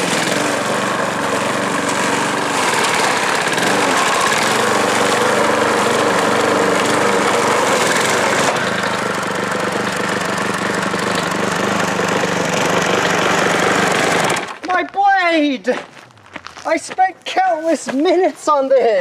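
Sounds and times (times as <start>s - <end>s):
lawn mower running hard: 0.0s - 14.6s
wood splintering: 0.0s - 17.0s.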